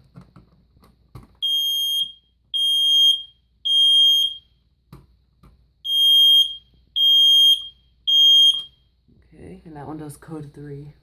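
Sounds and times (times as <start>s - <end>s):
smoke alarm beeping: 1.4s - 4.6s, 5.8s - 8.9s.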